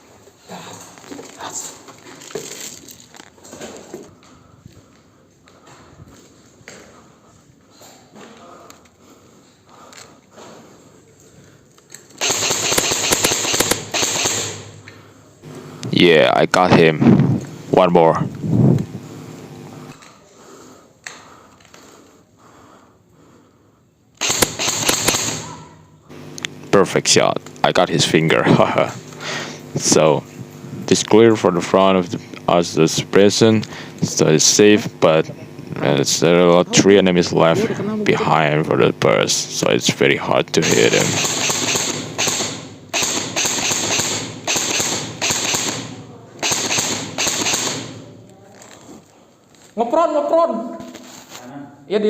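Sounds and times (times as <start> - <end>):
airsoft rifle shots: 12.2 - 14.9, 24.2 - 25.8, 40.6 - 48.2.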